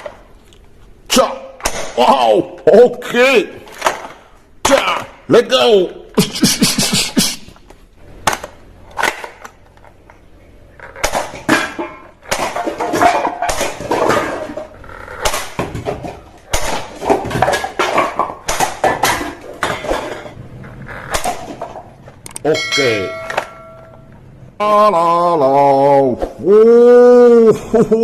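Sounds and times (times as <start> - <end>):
plastic toy guns clattering: 8.2 - 10.2, 10.8 - 22.4.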